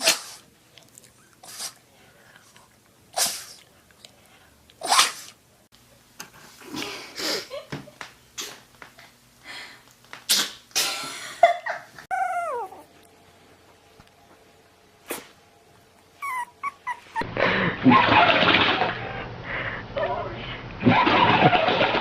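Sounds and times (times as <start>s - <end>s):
dog sneezing: 0.0s - 0.5s, 3.1s - 3.6s, 4.8s - 5.4s, 10.3s - 11.0s, 15.0s - 15.4s.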